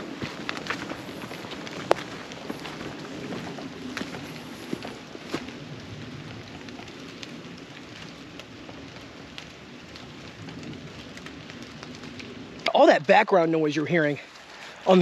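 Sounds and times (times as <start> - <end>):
rain: 0.0 - 15.0
raindrops ticking: 0.0 - 15.0.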